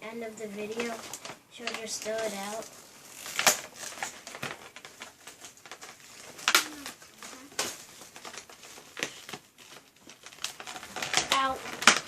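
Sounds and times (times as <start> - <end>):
plastic packaging crinkling: 0.2 - 12.0
sharp plastic crackle: 0.2 - 12.0.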